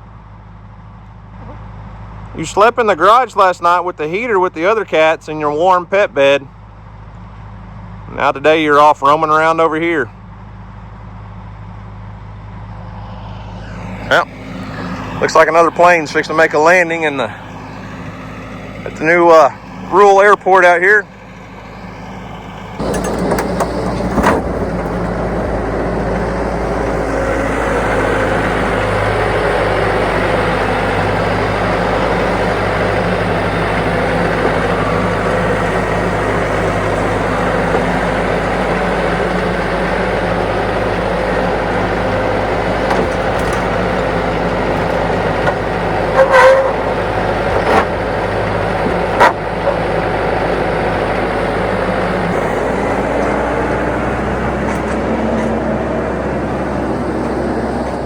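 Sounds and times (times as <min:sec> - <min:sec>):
vehicle engine running: 0:00.0 - 0:58.0
sharp knocks and clanks: 0:22.8 - 0:25.9.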